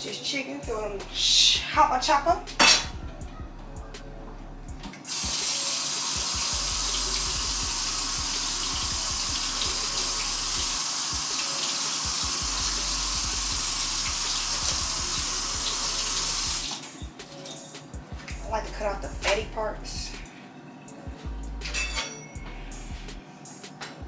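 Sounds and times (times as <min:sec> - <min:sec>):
faucet running into sink: 0:05.1 - 0:16.9.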